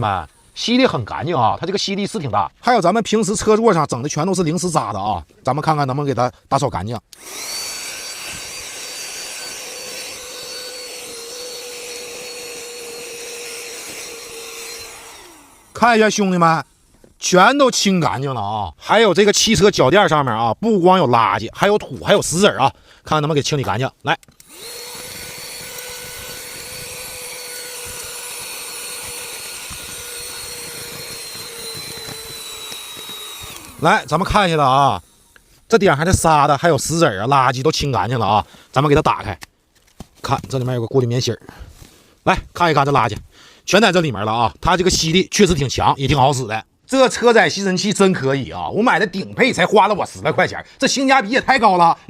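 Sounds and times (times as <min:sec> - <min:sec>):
handheld vacuum cleaner running: 0:07.1 - 0:16.2, 0:24.4 - 0:35.5.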